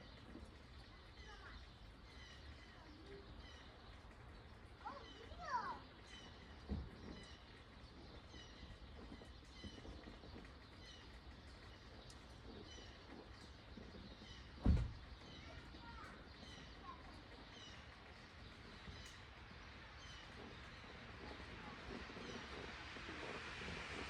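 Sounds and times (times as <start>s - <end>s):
small birds chirping: 0.0s - 24.0s
low thump: 14.6s - 15.0s
low steady rush of noise: 16.8s - 24.0s.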